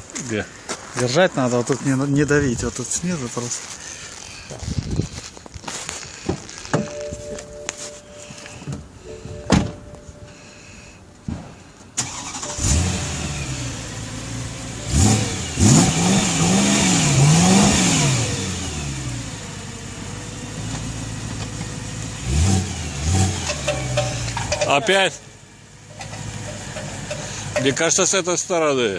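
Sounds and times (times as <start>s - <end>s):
ignition clicks: 12.0s - 12.8s
car engine starting and revving: 12.0s - 24.8s, 25.6s - 28.1s.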